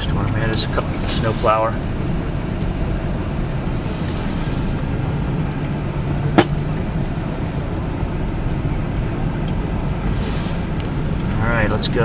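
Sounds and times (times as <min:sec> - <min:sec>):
car engine running: 0:00.0 - 0:12.0.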